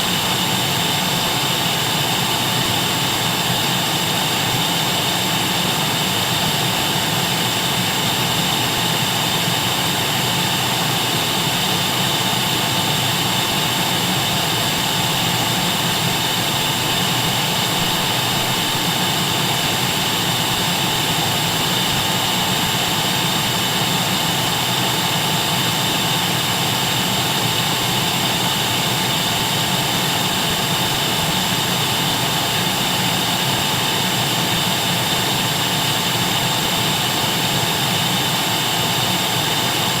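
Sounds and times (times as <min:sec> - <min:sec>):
vacuum cleaner running: 0:00.0 - 0:40.0.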